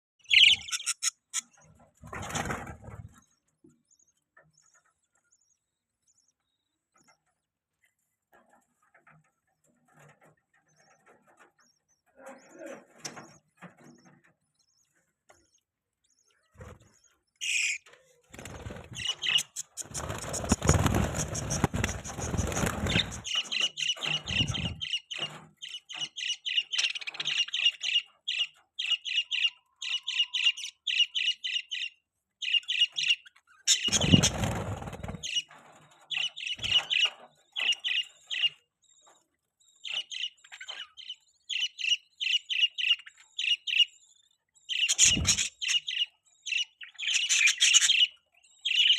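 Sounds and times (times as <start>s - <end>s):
budgerigars chirping: 0.2s - 1.7s, 17.4s - 39.1s, 39.7s - 48.9s
rustling noise: 18.3s - 23.4s.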